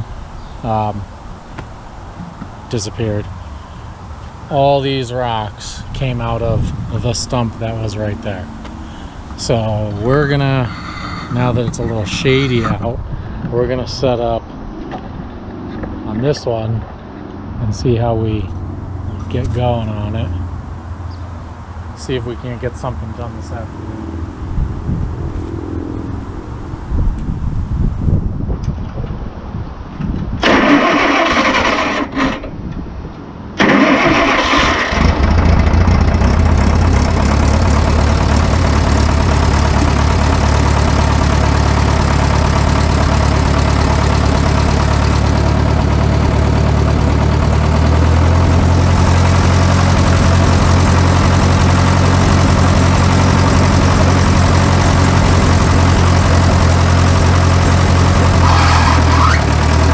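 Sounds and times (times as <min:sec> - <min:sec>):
stump grinder engine starting and running: 0:30.4 - 0:32.5, 0:33.6 - 0:59.9.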